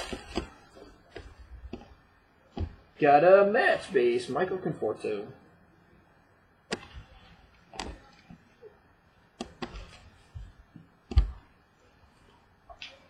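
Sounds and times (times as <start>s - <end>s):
cards clicking and tapping: 9.4s - 10.5s.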